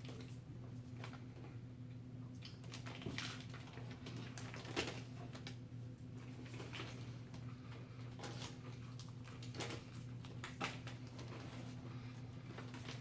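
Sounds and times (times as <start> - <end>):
steady low hum: 0.0 - 13.0
small clicks and crackles: 2.4 - 5.6, 6.4 - 11.7.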